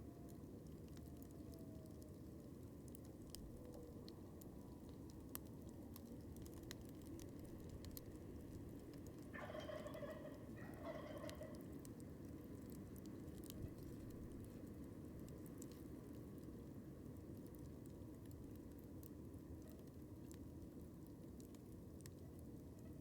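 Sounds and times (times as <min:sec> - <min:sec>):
campfire crackling and popping: 0:00.0 - 0:23.0
turkey gobbling: 0:09.3 - 0:11.6.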